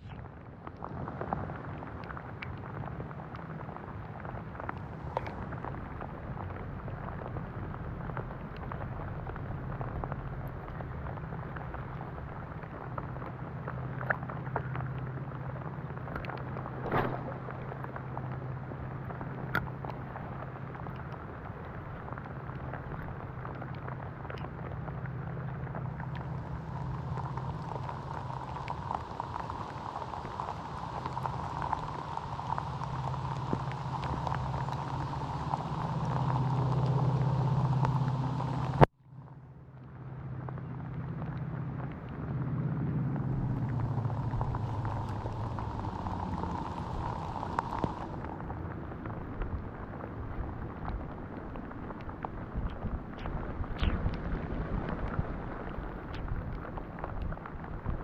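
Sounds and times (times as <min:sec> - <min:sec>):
steady rain falling: 0:00.0 - 0:58.0
wide rushing noise: 0:42.7 - 0:50.2.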